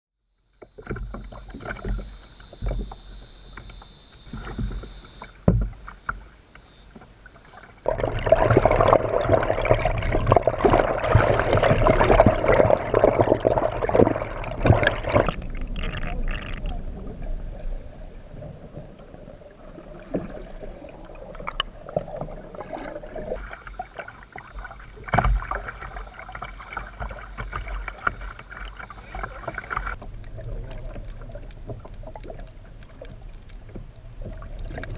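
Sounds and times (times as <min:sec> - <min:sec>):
cicadas droning: 0:00.2 - 0:07.9, 0:18.5 - 0:30.2
paddle splashing in water: 0:00.6 - 0:16.6, 0:18.5 - 0:34.9.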